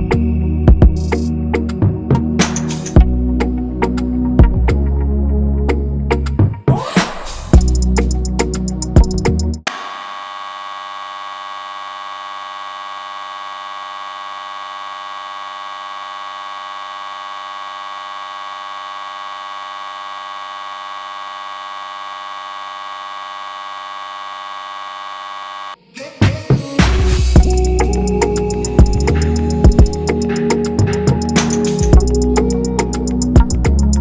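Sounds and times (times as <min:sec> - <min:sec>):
electronic buzzing tone: 0:09.7 - 0:25.8.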